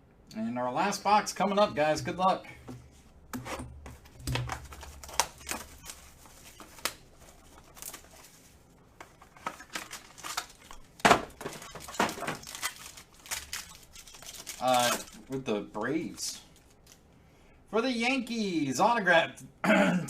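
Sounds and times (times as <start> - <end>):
packaging crinkling and tearing: 4.5 - 8.5, 9.2 - 15.3.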